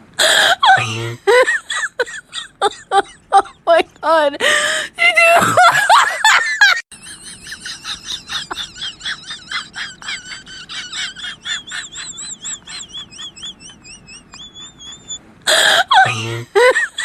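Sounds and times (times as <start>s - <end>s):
high-pitched wavering chirps: 11.7s - 15.2s.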